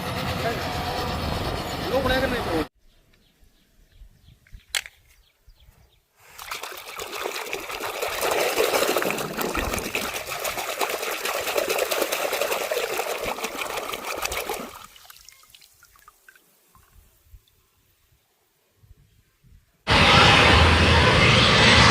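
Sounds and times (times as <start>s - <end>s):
water running: 6.3s - 16.5s.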